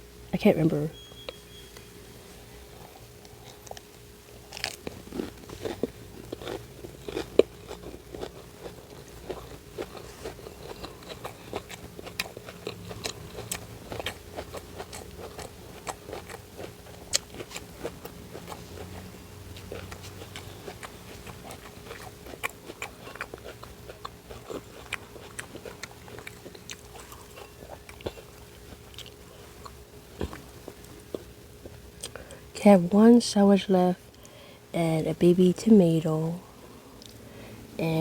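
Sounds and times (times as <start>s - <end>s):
biting and chewing sandwich: 2.7s - 32.4s.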